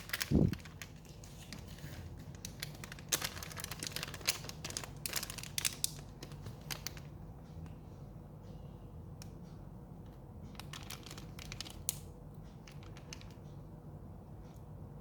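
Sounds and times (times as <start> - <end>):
packaging crinkling and tearing: 0.0 - 7.1, 10.6 - 11.9.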